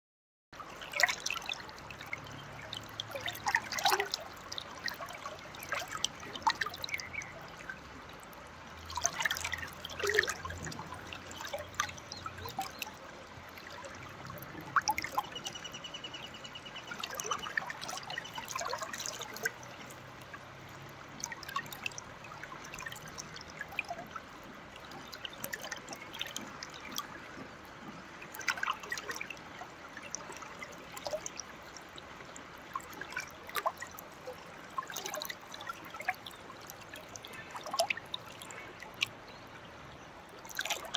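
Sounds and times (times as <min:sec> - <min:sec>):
sharp water splashes: 0:00.6 - 0:07.8, 0:08.8 - 0:24.2, 0:24.8 - 0:27.4, 0:28.2 - 0:39.2, 0:40.3 - 0:40.9
river water flowing: 0:00.6 - 0:40.9.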